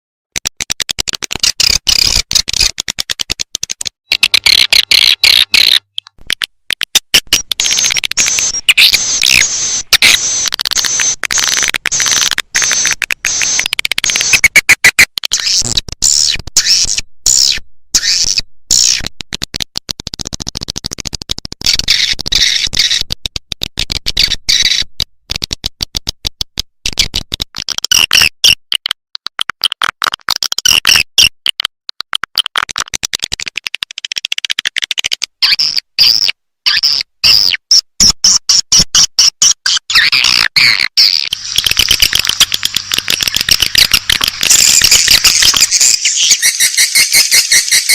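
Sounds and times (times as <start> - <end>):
swiftlet twittering and chirping: 41.0 - 47.9.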